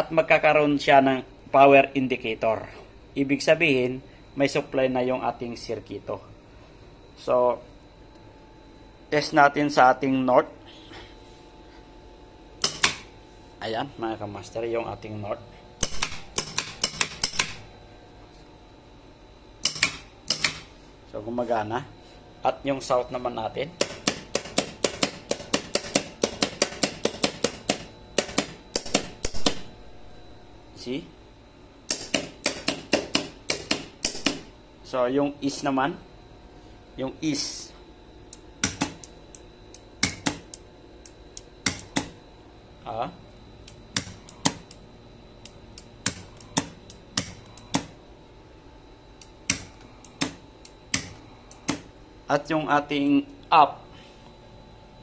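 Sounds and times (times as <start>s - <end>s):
contactors and buttons clicking: 15.8s - 17.7s, 19.6s - 20.7s, 38.3s - 42.2s, 43.6s - 44.8s, 45.4s - 48.0s, 49.2s - 51.9s.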